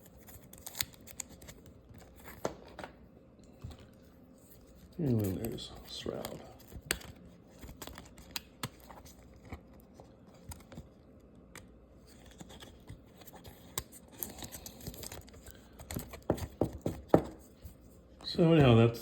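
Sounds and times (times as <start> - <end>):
cards clicking and tapping: 5.1 - 9.6, 11.5 - 17.4.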